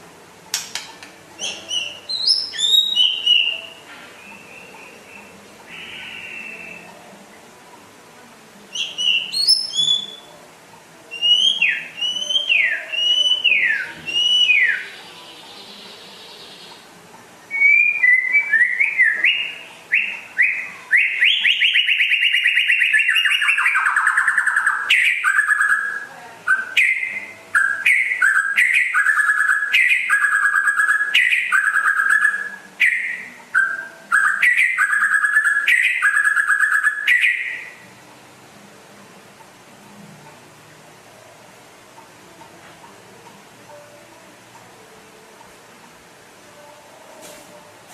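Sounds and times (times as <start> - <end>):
bird singing whistled notes: 1.4 - 7.0, 8.7 - 10.3, 11.1 - 16.8, 17.5 - 37.8.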